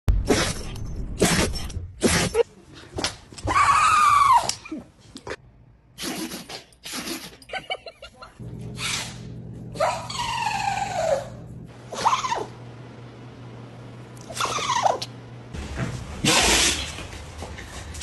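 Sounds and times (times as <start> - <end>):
person sneezing: 6.0 - 7.4, 16.2 - 16.9.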